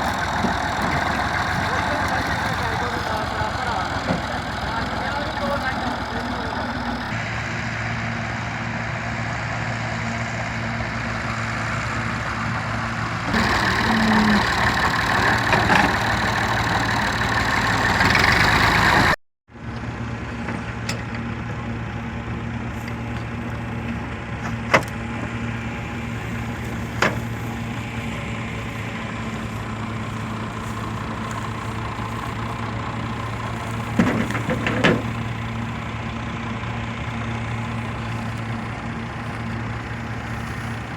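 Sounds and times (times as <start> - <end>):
straw chopper blower rushing: 0.0 - 7.2, 13.3 - 19.2
tractor diesel engine running: 0.0 - 40.9.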